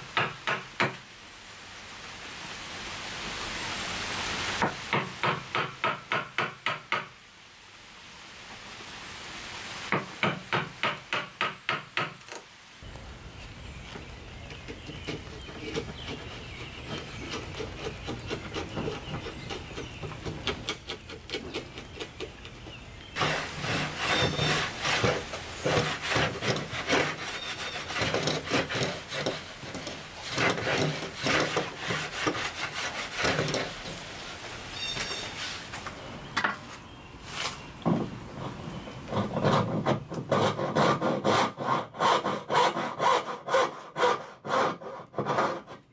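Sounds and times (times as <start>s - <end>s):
hand tool rubbing wood: 14.5s - 34.2s, 38.3s - 45.8s.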